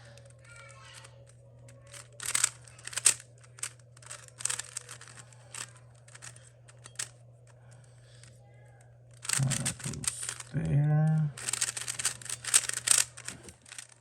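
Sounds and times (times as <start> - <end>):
plastic puzzle cube clicking: 1.8 - 7.1, 9.1 - 10.5, 11.4 - 14.0.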